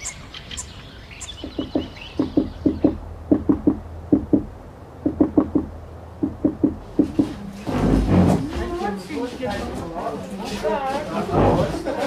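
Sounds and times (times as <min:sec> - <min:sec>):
knocking on a hard surface: 0:01.4 - 0:08.8.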